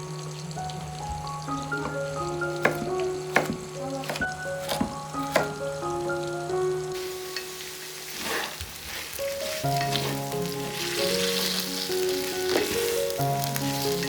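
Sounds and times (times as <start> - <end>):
food sizzling in a frying pan: 0.0 - 14.0
stirring scrapes: 8.0 - 11.6.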